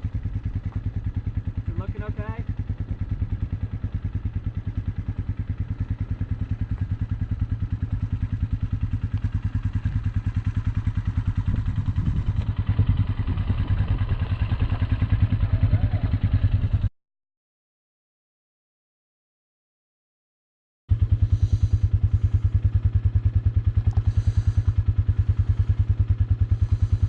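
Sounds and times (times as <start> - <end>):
electric car road rumble: 0.0 - 16.8, 20.9 - 27.0.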